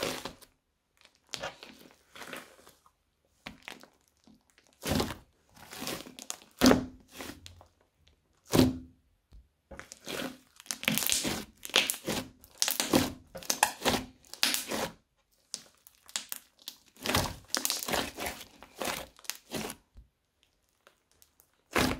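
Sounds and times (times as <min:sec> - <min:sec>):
crunchy slime crackling and popping: 0:03.5 - 0:08.8, 0:09.8 - 0:21.9.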